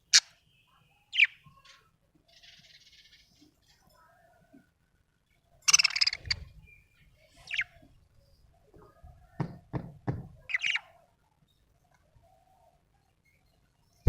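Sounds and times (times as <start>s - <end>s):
budgerigar chirping: 5.7s - 6.5s, 7.5s - 7.8s, 10.5s - 10.9s.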